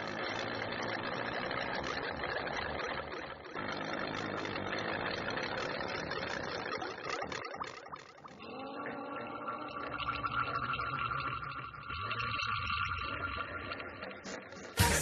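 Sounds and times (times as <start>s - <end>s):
diesel truck engine running: 0.0s - 6.8s.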